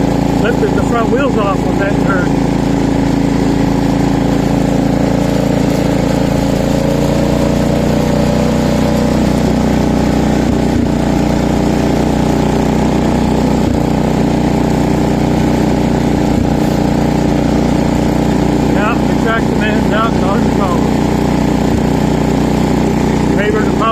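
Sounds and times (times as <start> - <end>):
garden tractor engine running: 0.0 - 23.9.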